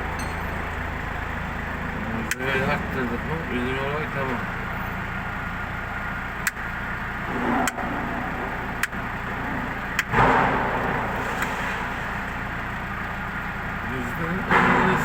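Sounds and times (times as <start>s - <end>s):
diesel truck engine idling: 0.0s - 15.0s
sharp clicks: 8.7s - 9.0s.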